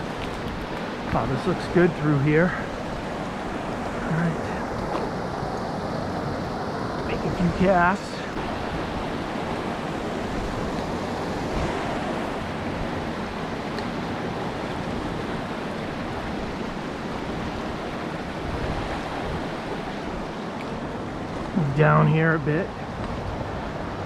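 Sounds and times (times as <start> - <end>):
brook water rushing: 0.0 - 24.0.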